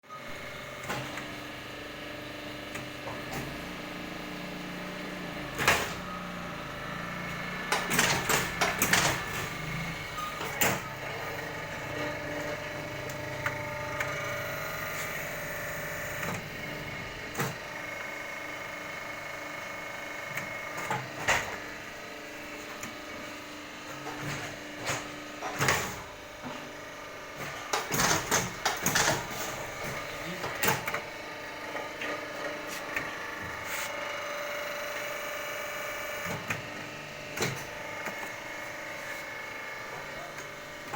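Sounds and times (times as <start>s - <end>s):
machine humming: 4.0s - 20.7s.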